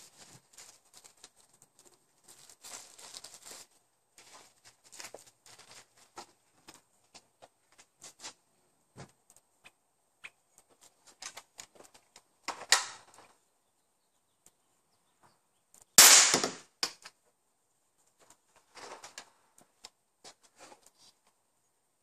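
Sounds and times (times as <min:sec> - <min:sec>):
air can bursting bang: 0:16.0 - 0:16.7
sharp pop: 0:16.0 - 0:17.0.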